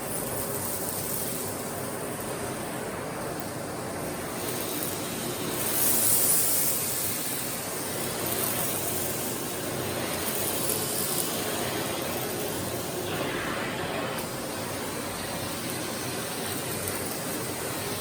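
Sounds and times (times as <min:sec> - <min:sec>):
vacuum cleaner running: 0:04.2 - 0:18.0.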